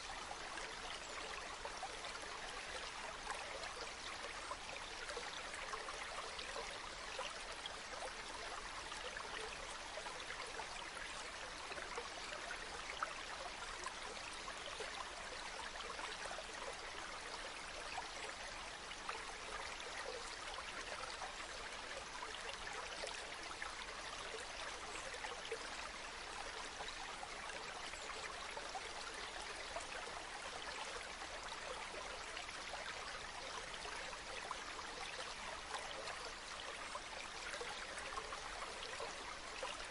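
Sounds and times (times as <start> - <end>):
stream water splashing over rocks: 20.1 - 39.9.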